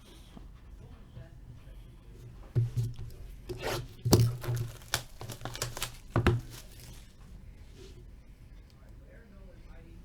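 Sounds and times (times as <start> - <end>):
packaging tearing and crinkling: 3.5 - 7.2.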